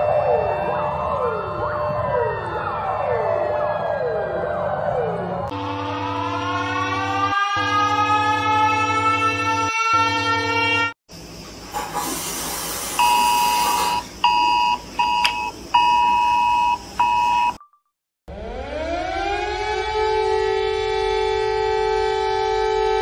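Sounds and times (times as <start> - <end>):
siren wailing: 0.0 - 11.0, 18.3 - 23.0
steady alarm tone: 0.0 - 11.0
hiss: 11.7 - 14.1.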